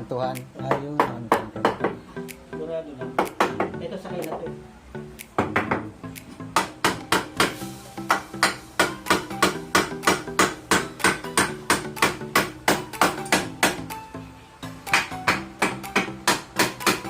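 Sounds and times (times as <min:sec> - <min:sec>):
music with fast percussive beat: 0:00.0 - 0:14.1, 0:14.7 - 0:17.0.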